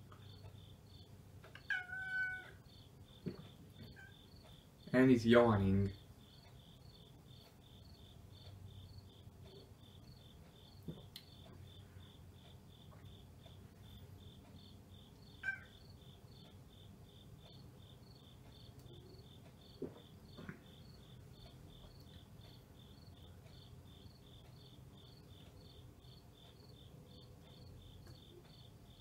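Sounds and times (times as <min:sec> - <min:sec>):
cricket chirping: 0:00.0 - 0:29.0.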